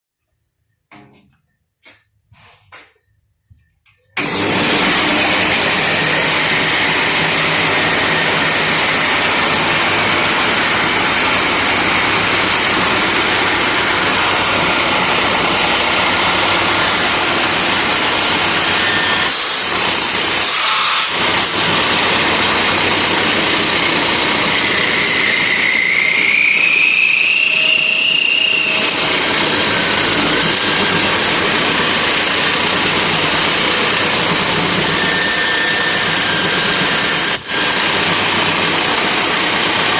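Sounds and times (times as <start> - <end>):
high squeal rising in pitch: 4.2 - 22.8, 23.4 - 32.7, 34.9 - 37.9
lathe running: 4.2 - 39.9.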